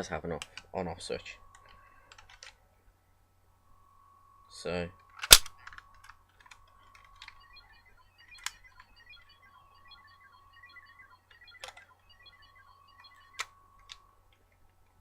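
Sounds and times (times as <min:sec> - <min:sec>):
toy electronic tone with beeps: 0:04.4 - 0:14.2.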